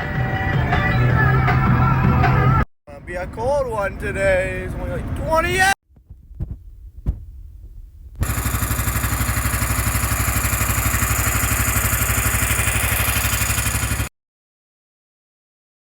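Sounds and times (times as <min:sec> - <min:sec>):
engine running: 0:06.2 - 0:14.1.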